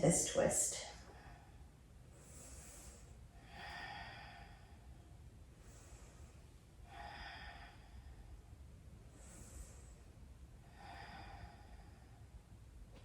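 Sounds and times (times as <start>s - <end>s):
person breathing deeply: 1.0s - 12.5s.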